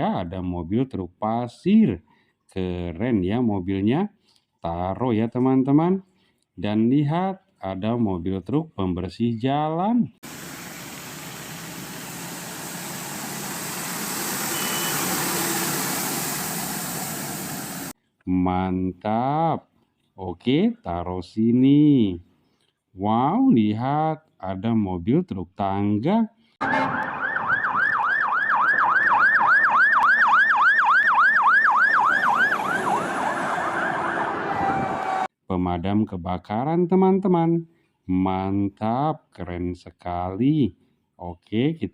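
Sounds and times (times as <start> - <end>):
truck engine running: 10.2 - 17.9
short high tone: 14.3 - 16.6
toy electronic siren yelping: 26.6 - 35.3.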